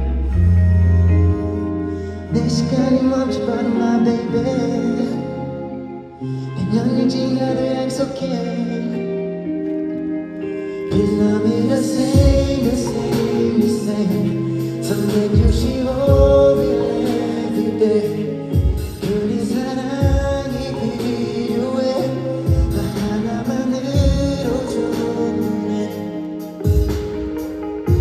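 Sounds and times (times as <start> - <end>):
held chords: 0.0 - 28.0
person singing: 0.0 - 28.0
drum beat with kick and hi-hat: 12.2 - 13.4, 15.1 - 16.8, 18.6 - 19.3, 20.0 - 20.7, 22.5 - 23.2, 24.0 - 24.6, 26.6 - 28.0.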